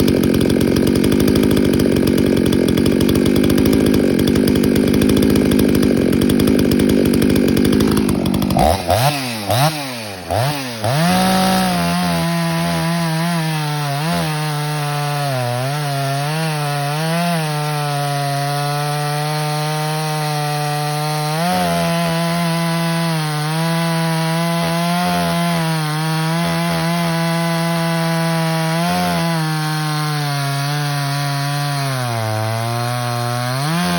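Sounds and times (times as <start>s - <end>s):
chainsaw running at high revs: 0.0s - 33.9s.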